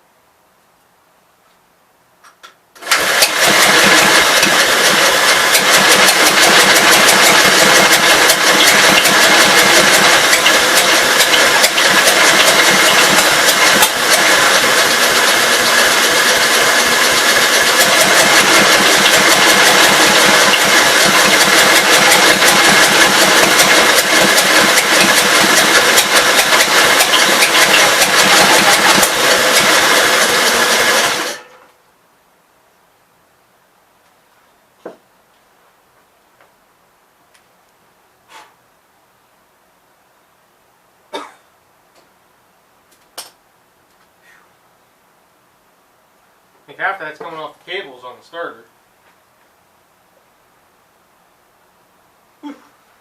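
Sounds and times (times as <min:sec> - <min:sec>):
electric starter cranking engine: 0:02.8 - 0:31.5.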